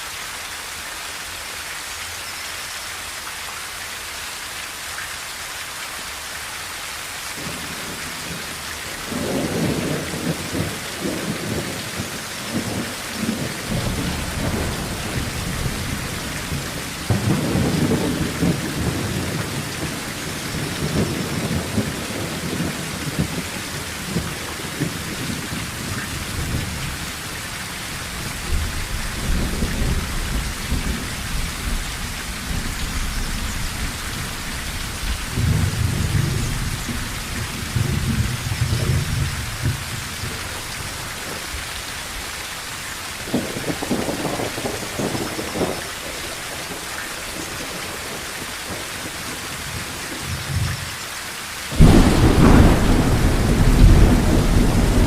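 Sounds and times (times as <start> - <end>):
rain on a tin roof: 0.0 - 55.0
rolling thunder: 9.1 - 27.1, 28.1 - 41.5, 51.7 - 55.0.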